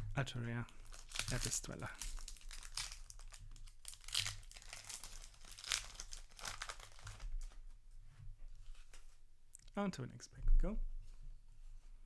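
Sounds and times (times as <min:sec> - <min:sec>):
card pack wrapper crinkling: 0:00.6 - 0:07.6.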